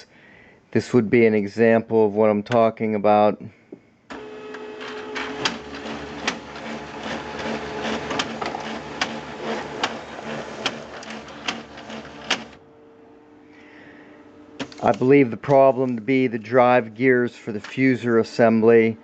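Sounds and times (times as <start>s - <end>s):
laser printer whirring and clunking: 4.1s - 12.6s
faint hum: 10.1s - 19.0s.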